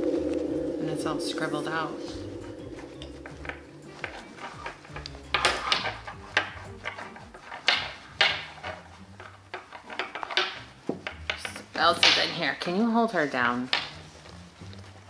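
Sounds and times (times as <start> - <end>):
hands rustling and scraping: 0.0 - 15.0.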